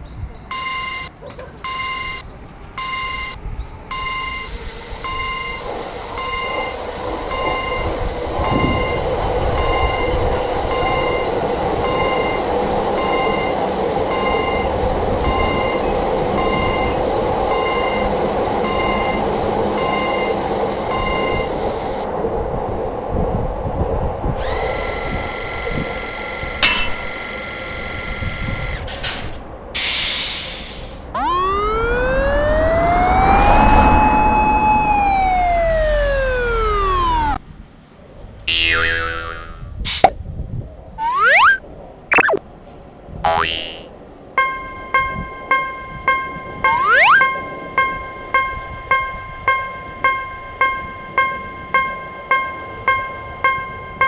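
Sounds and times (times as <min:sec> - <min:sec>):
railroad crossing alarm ringing: 0:00.5 - 0:01.1, 0:01.7 - 0:02.2, 0:24.4 - 0:28.7, 0:31.2 - 0:37.4
siren winding up: 0:02.8 - 0:22.1, 0:24.4 - 0:29.0, 0:29.8 - 0:37.4, 0:38.5 - 0:40.2, 0:41.0 - 0:42.4, 0:43.3 - 0:43.9, 0:46.7 - 0:47.4
steady tone: 0:26.4 - 0:27.3, 0:30.8 - 0:37.4, 0:41.0 - 0:42.4, 0:46.7 - 0:47.3.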